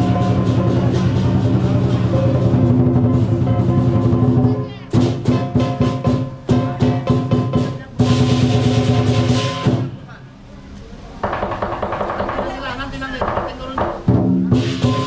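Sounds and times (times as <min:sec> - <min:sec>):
gong ringing: 0:00.0 - 0:04.4
large drum beating: 0:00.0 - 0:10.2, 0:11.2 - 0:15.0
cymbals clashing: 0:00.0 - 0:10.3, 0:14.1 - 0:15.0.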